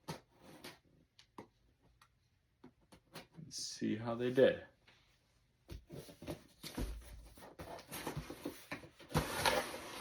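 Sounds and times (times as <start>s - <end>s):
tape and cardboard rustling: 5.8s - 10.0s.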